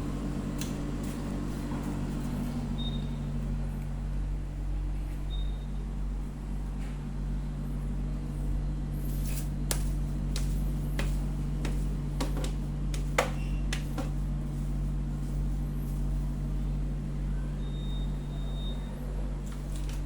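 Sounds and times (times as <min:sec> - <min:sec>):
clicks and knocks of objects: 0:09.2 - 0:14.2.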